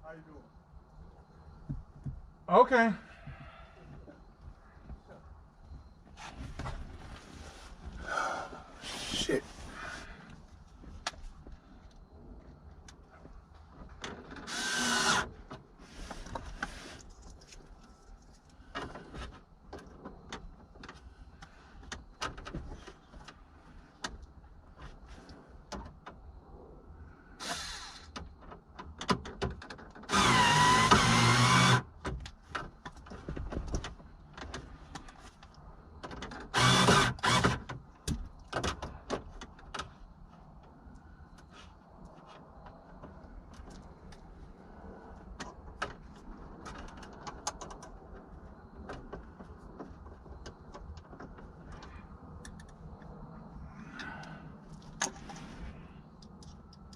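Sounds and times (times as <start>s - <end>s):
cordless drill motor whirring: 14.5s - 15.3s, 30.1s - 31.8s, 36.6s - 37.6s.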